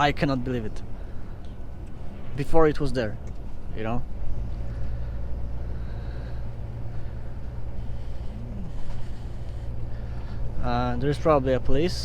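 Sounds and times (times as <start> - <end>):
truck diesel engine drone in cab: 0.0 - 12.0.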